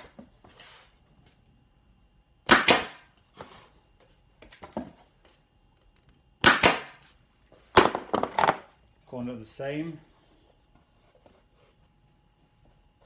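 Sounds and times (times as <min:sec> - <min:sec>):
nail gun shots: 0:02.5 - 0:03.1, 0:06.4 - 0:07.0.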